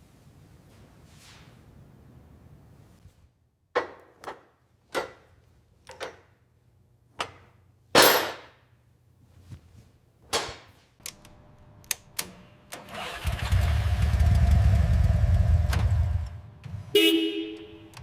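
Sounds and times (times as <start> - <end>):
loud steady low rumble: 13.6 - 16.5.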